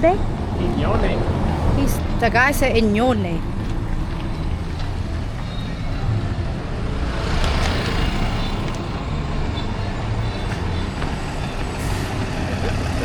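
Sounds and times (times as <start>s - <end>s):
traffic rumble: 0.0s - 13.0s
vehicle engine running: 0.0s - 13.0s.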